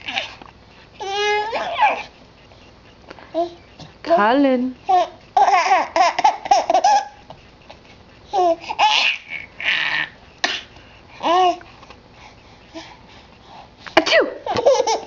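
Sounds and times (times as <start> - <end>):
baby laughing: 1.0 - 2.1, 4.9 - 7.2, 8.3 - 10.6, 14.4 - 15.0.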